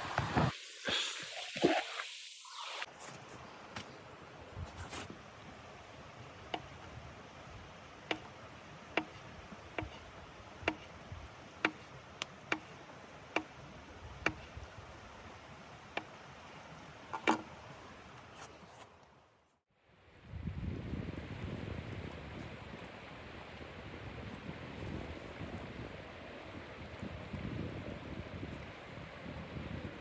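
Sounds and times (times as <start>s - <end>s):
steady fire hiss: 0.0s - 2.9s.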